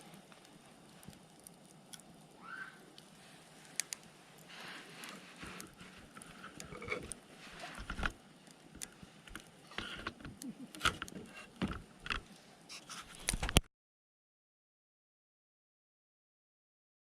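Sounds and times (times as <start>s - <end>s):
campfire pops and snaps: 0.0s - 12.4s, 13.0s - 13.7s
soft fire hiss: 0.0s - 13.6s.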